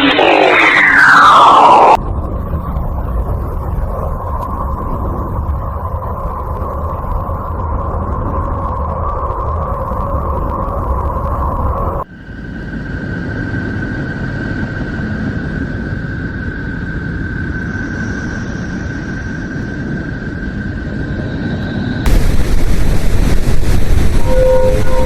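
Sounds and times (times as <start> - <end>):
steady high tone: 0.0 - 2.0, 23.6 - 25.0
loud rushing noise: 0.0 - 2.6, 22.1 - 25.0
low rumbling noise: 0.0 - 21.3, 22.0 - 25.0
droning sound: 0.0 - 25.0.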